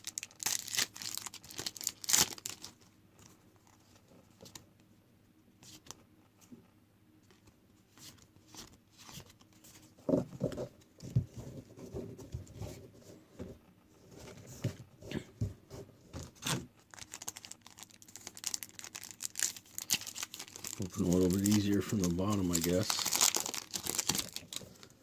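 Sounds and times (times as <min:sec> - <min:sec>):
wrapper tearing and crinkling: 0:00.0 - 0:02.8, 0:16.4 - 0:24.9.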